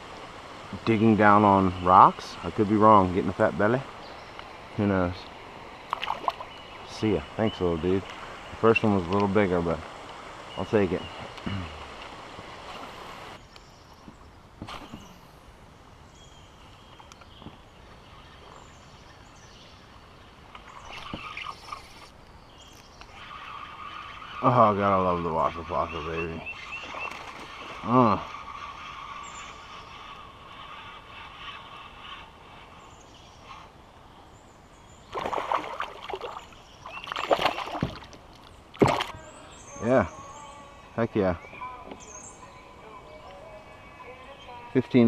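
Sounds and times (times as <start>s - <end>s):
songbirds chirping: 0.0s - 45.0s
fish thrashing water splashing: 35.1s - 39.2s.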